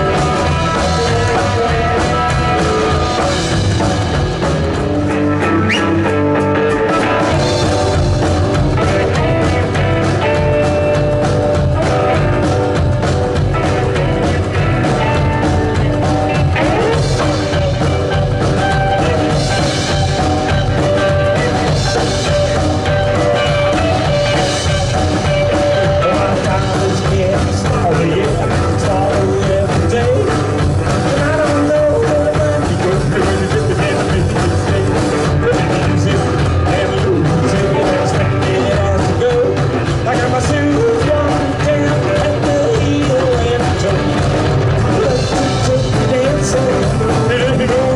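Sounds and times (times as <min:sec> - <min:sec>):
person singing: 0:00.0 - 0:04.6, 0:05.2 - 0:47.9
rock band playing live: 0:00.0 - 0:47.9.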